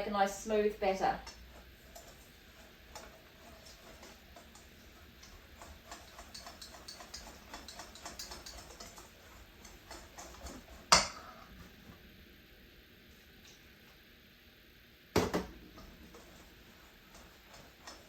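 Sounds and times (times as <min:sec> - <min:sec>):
whisk clicking against bowl: 0:01.2 - 0:11.2, 0:15.8 - 0:18.0.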